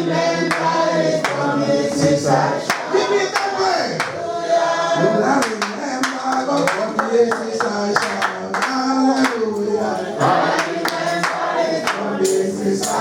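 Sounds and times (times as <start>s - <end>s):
congregation singing: 0.0s - 13.0s
hand clapping: 0.5s - 1.5s, 2.6s - 4.2s, 5.4s - 13.0s.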